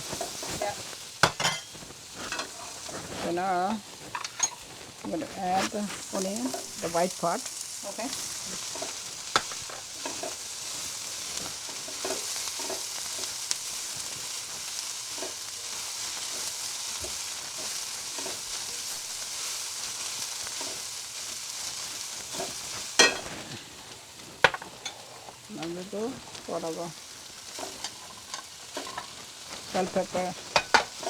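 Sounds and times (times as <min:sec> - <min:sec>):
vegetables sizzling in a pan: 0:00.0 - 0:31.0
spatula scraping and tapping: 0:00.1 - 0:06.9, 0:08.5 - 0:10.4, 0:11.2 - 0:14.2, 0:27.5 - 0:29.2, 0:29.8 - 0:31.0.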